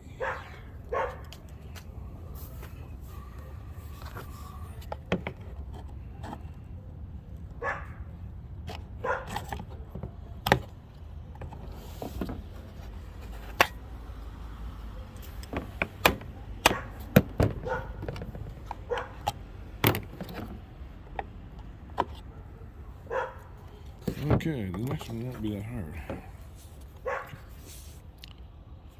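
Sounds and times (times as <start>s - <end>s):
hand tools knocking and clicking: 15.2s - 22.2s.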